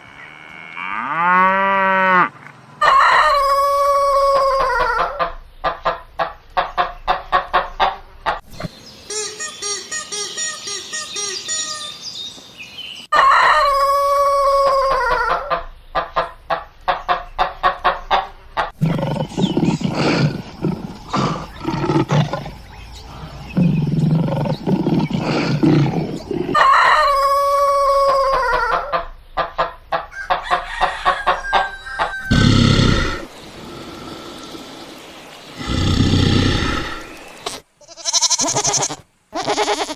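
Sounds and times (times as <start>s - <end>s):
rooster crowing: 2.8s - 5.2s, 13.1s - 15.5s, 26.5s - 28.9s, 30.1s - 34.6s
chickens clucking: 2.8s - 8.7s, 13.1s - 37.6s
lower-pitched animal calls: 35.6s - 39.9s.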